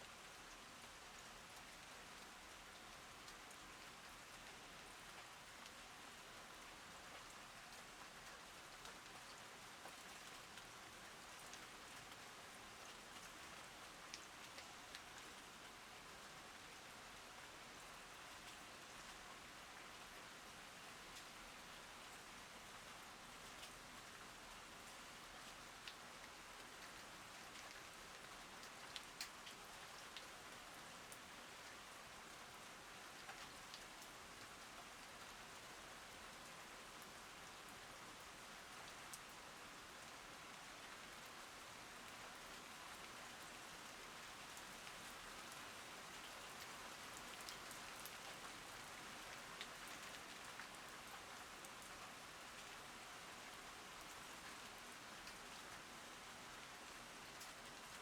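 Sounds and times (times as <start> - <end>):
rainfall: 0.0 - 58.0
raindrop ticks: 26.6 - 30.3.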